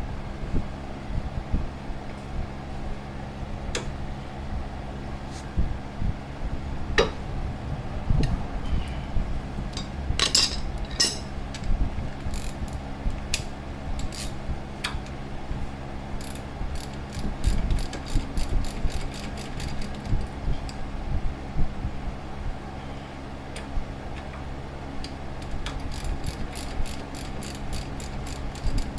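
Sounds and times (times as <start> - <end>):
metal clinks: 9.8 - 11.3
ratchet wrench clicking: 12.3 - 12.8, 16.2 - 20.1, 25.4 - 28.9.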